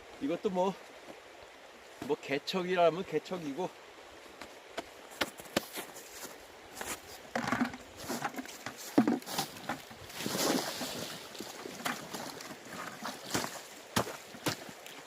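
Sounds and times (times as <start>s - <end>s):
shallow water splashing: 7.4s - 15.0s.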